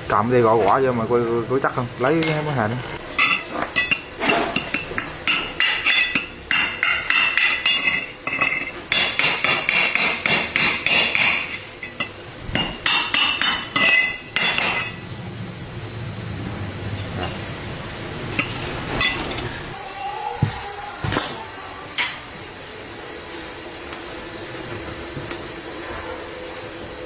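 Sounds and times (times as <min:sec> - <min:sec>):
hammer striking metal: 0:03.2 - 0:15.0.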